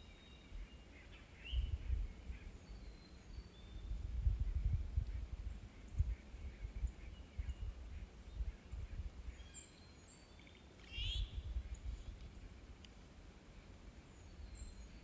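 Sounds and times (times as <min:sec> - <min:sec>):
faint bird chirps: 0:00.0 - 0:15.0
low rumbling on microphone: 0:03.8 - 0:09.4.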